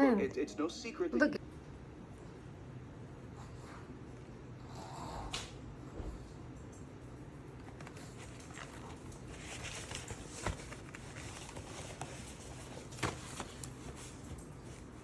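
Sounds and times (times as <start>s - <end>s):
rustling and scratching handling: 7.6s - 15.0s.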